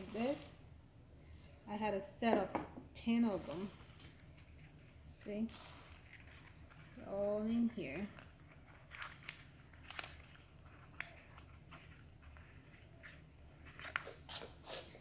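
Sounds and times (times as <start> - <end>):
plastic packaging crinkling: 0.0 - 0.6, 3.1 - 14.2.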